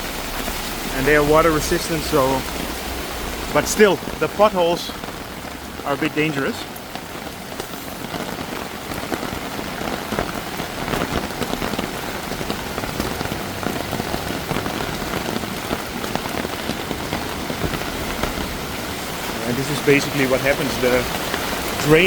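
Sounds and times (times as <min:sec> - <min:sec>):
heavy rain falling: 0:00.0 - 0:22.0.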